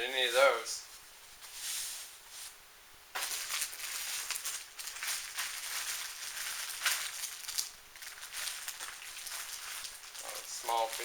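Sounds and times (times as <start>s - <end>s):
plastic packaging crinkling: 3.2s - 11.0s.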